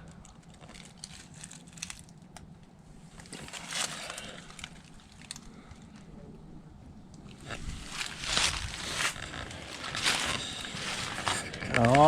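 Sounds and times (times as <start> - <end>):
twigs snapping: 0.0 - 6.1
leaves rustling: 2.9 - 6.2, 7.2 - 12.0
footsteps crunching through dry leaves: 7.4 - 12.0.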